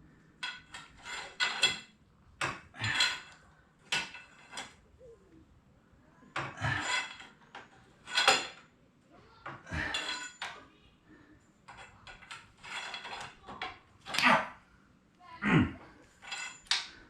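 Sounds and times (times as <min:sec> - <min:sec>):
metal tools clanking and scraping: 0:00.4 - 0:04.8, 0:06.4 - 0:08.7, 0:09.5 - 0:10.6, 0:11.7 - 0:14.2, 0:16.0 - 0:17.0.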